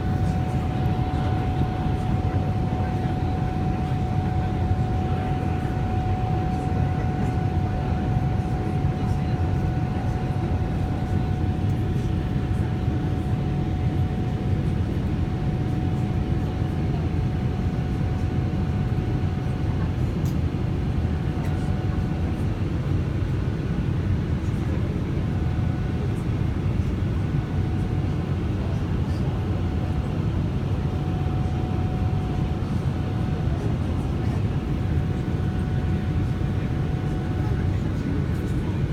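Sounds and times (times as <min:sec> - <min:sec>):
faint steady whine: 0:00.0 - 0:13.0
jet engine cabin rumble: 0:00.0 - 0:38.9.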